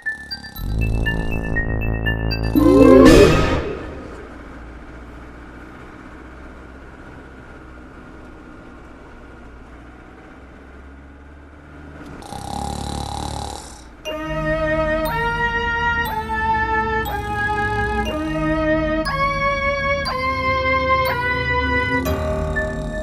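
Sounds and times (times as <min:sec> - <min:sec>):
person snoring: 0:12.2 - 0:13.9.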